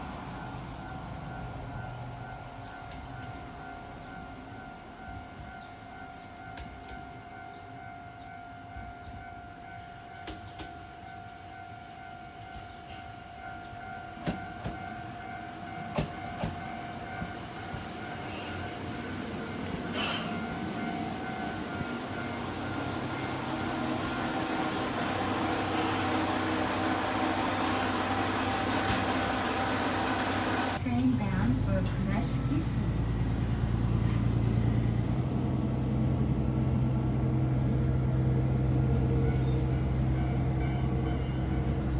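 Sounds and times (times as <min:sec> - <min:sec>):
train rumble: 0:00.0 - 0:41.9
level crossing warning bell ringing: 0:11.1 - 0:31.5.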